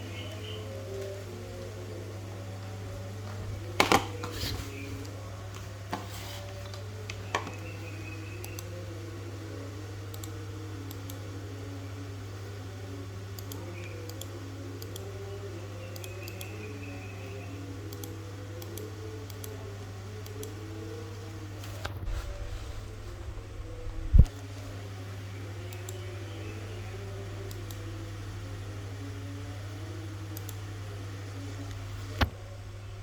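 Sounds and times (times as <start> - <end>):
faint indistinct voices: 0.0 - 33.0
steady low hum: 0.0 - 33.0
sharp clicks: 6.7 - 8.7, 10.1 - 11.3, 13.4 - 15.1, 15.9 - 16.7, 17.9 - 19.6, 30.4 - 30.6.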